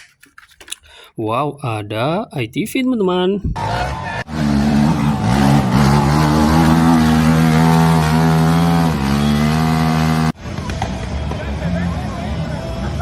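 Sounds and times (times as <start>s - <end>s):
atv engine running: 3.6s - 10.4s.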